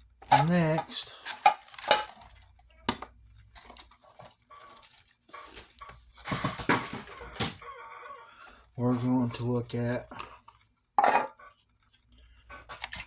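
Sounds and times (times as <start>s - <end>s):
plastic packaging clicks and rustles: 0.2s - 7.6s.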